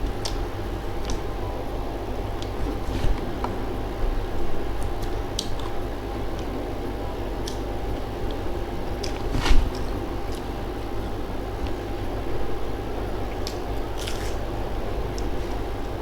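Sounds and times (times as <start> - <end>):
person chewing food: 13.3 - 14.4.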